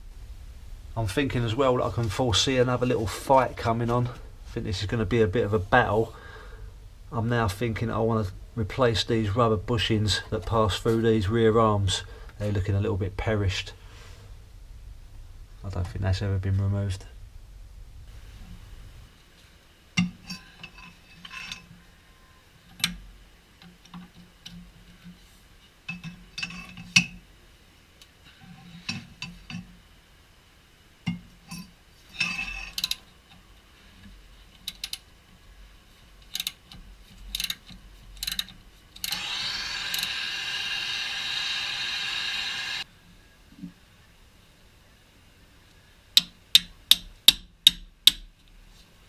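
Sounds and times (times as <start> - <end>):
power tool running: 39.0 - 42.8.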